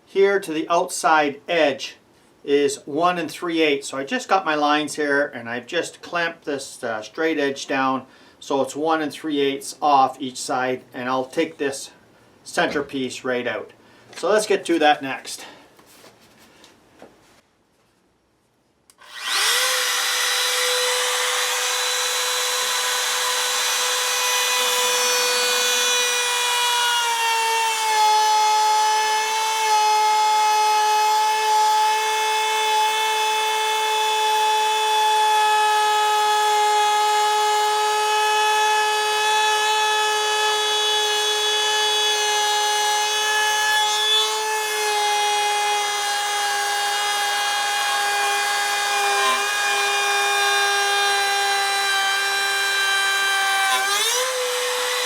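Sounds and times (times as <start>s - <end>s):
electric router whining through wood: 19.0s - 55.0s.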